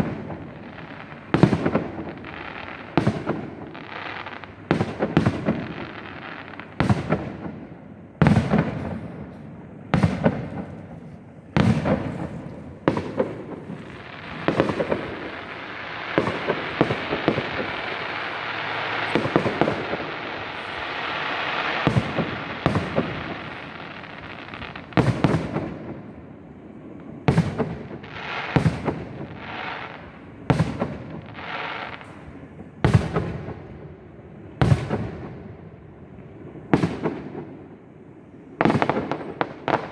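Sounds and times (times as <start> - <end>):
firework shells bursting: 0.0 - 25.8
fireworks crackling: 0.0 - 39.9.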